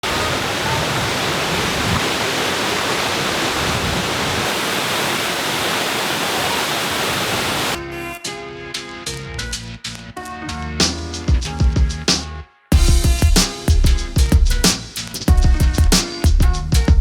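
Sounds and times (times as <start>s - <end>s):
rush of falling water: 0.0s - 7.8s
music with a beat: 7.8s - 17.0s.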